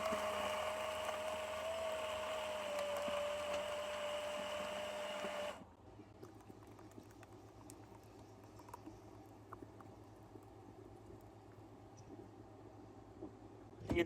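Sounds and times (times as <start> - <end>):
blender motor whine: 0.0 - 5.6.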